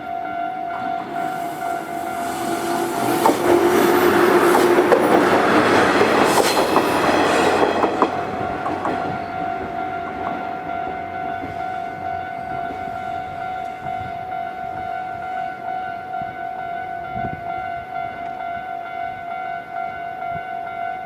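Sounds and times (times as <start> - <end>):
crossing warning bell ringing: 0.0 - 21.0
electric train passing: 0.0 - 21.0.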